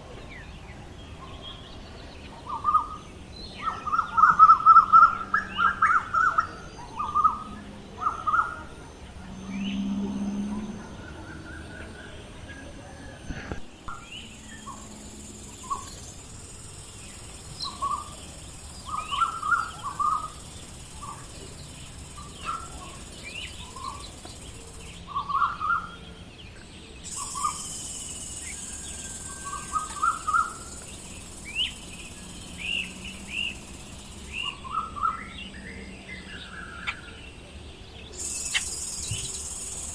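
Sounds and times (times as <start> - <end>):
birds chirping: 0.0 - 39.9
outdoor background noise: 0.0 - 39.9.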